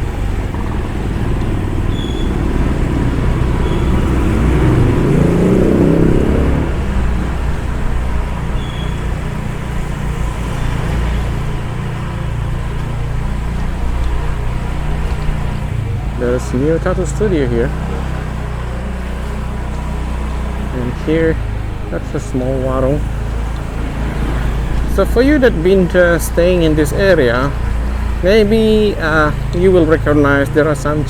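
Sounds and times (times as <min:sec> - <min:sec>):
car engine and road rumble: 0:00.0 - 0:31.0.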